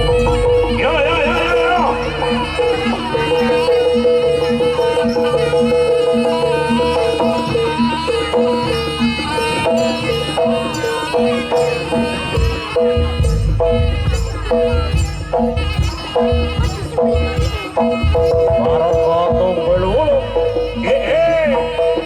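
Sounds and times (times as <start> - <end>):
gong-chimes and drums ensemble: 0.0 - 22.0
heavy low drumming: 0.0 - 22.0.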